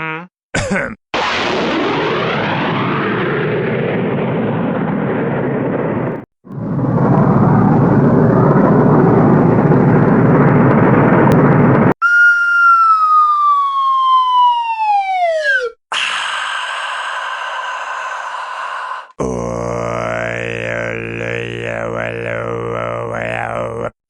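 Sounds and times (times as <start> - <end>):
tone sliding downward: 11.4 - 15.8.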